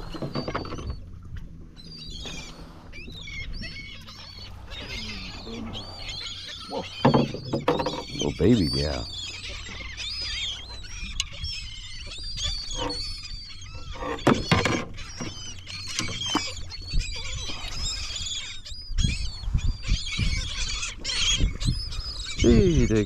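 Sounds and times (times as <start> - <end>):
low steady rumble: 0.0 - 7.6
seabirds calling: 0.0 - 23.0
knocks around boat: 6.9 - 8.2.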